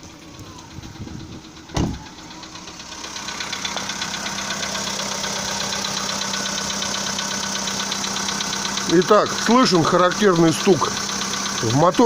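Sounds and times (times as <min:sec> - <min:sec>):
car engine idling: 0:00.0 - 0:12.0
fast ticking engine knock: 0:00.9 - 0:12.0
loud thump: 0:01.7 - 0:02.1.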